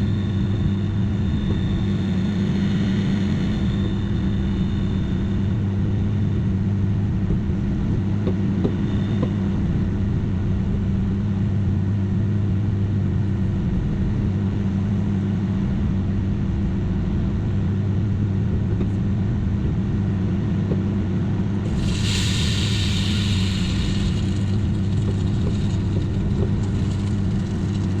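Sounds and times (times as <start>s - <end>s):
microwave oven humming: 0.0s - 28.0s
sudden loud hiss: 21.6s - 28.0s.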